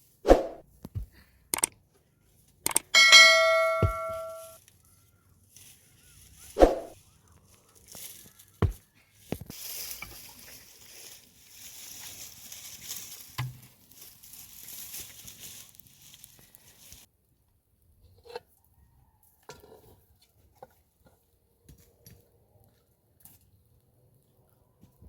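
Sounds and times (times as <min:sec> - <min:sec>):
thuds: 0:03.0 - 0:04.4
metal cookware clattering: 0:03.0 - 0:04.5
metal vessel ringing: 0:03.0 - 0:04.6.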